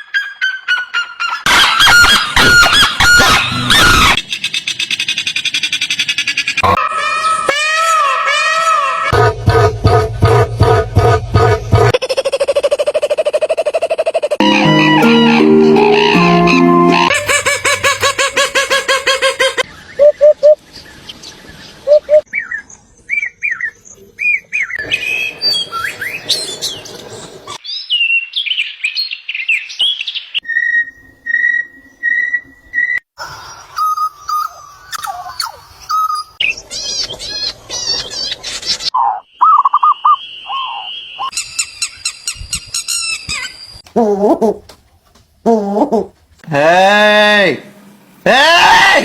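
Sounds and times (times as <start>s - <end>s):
birds calling and singing: 14.1s - 43.9s.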